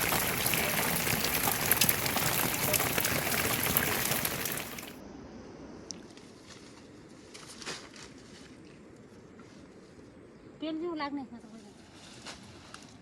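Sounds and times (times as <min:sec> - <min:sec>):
heavy rain hissing: 0:00.0 - 0:05.0
faint outdoor ambience: 0:00.0 - 0:13.0.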